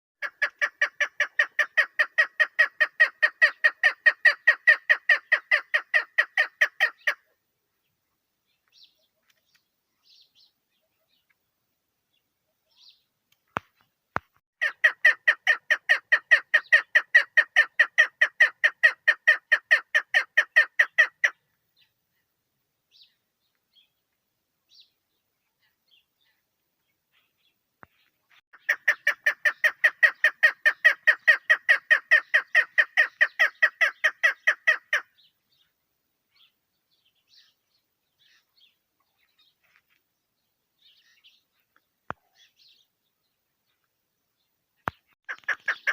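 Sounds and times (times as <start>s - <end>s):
partridge calling: 0.2s - 7.4s, 14.6s - 21.9s, 27.1s - 35.3s, 44.8s - 45.9s.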